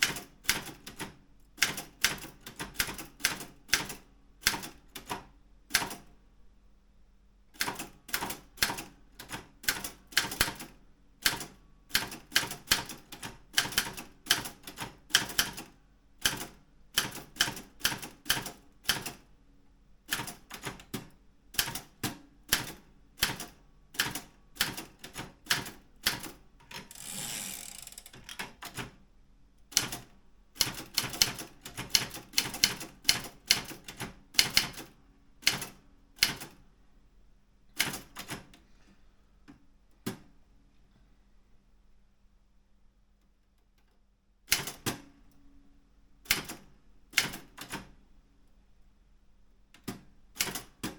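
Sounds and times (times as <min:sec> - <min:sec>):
typewriter carriage sliding: 0:26.7 - 0:28.4.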